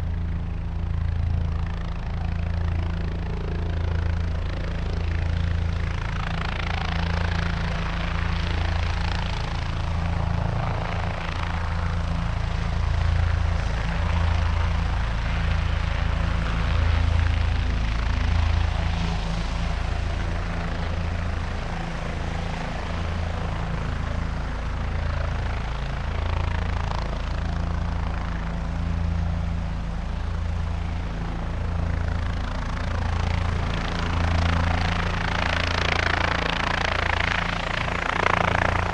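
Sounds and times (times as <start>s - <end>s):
helicopter engine and rotor: 0.0s - 38.9s.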